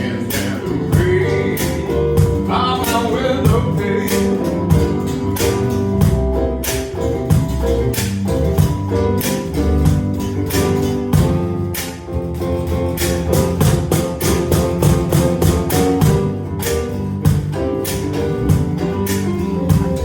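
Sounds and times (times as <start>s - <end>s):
person singing: 0.0s - 5.0s
strummed guitar: 0.0s - 20.0s.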